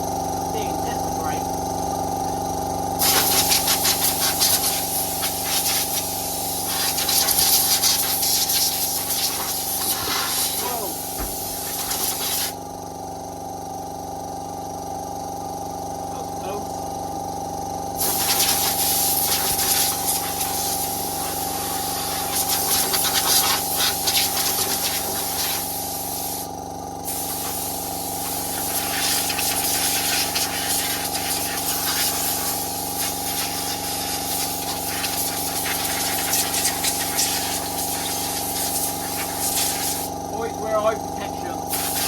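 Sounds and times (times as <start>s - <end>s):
pressure washer motor humming: 0.0s - 13.1s, 15.7s - 42.0s
water jet spraying: 3.0s - 12.6s, 18.0s - 26.4s, 27.1s - 40.1s, 41.7s - 42.0s.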